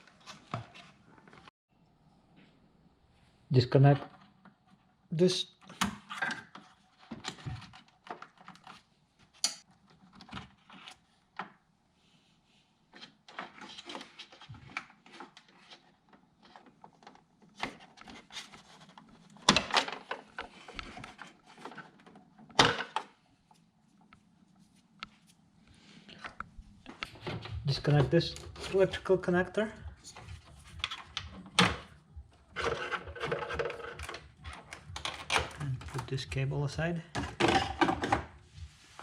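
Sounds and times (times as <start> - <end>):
plastic and metal parts rattling: 13.0 - 23.2, 27.0 - 36.3, 37.1 - 38.3.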